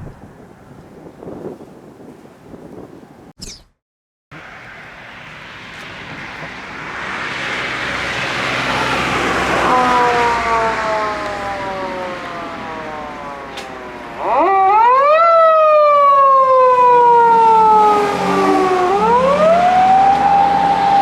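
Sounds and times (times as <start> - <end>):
police siren wail: 8.2 - 21.0
car engine accelerating: 17.7 - 21.0.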